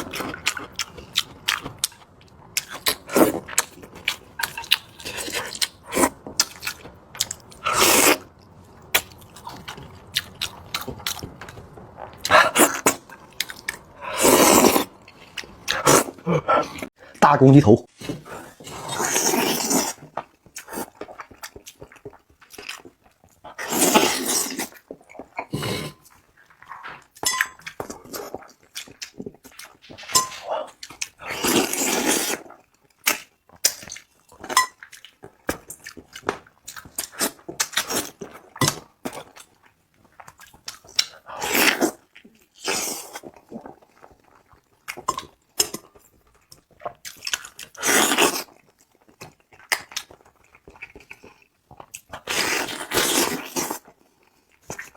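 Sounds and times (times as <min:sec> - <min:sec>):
wet chewing and smacking: 0:00.0 - 0:16.9, 0:18.9 - 0:30.0, 0:30.6 - 0:54.9
loud sucking: 0:14.0 - 0:15.0.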